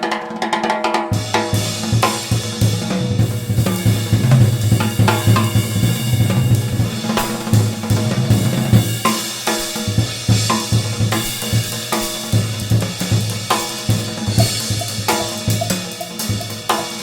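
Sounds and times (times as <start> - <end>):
drum kit: 0.0 - 17.0
bass line: 2.8 - 9.0.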